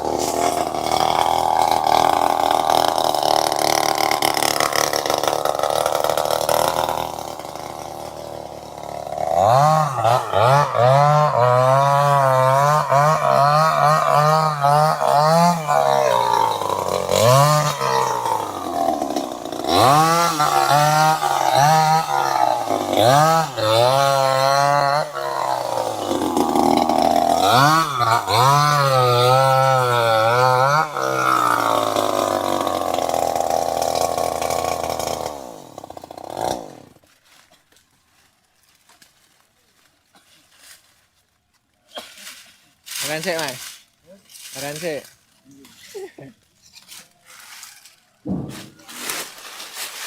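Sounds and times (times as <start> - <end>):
chainsaw engine revving: 0.0 - 37.0.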